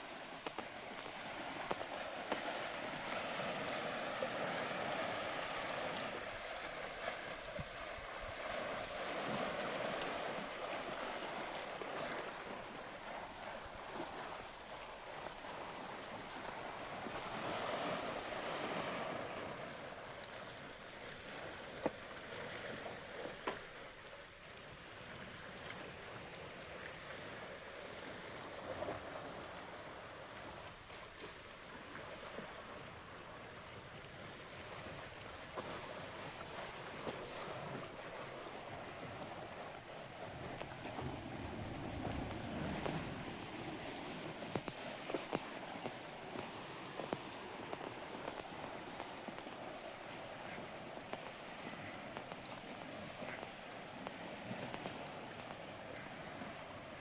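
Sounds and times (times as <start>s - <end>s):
small waves washing on shore: 0.0s - 57.0s.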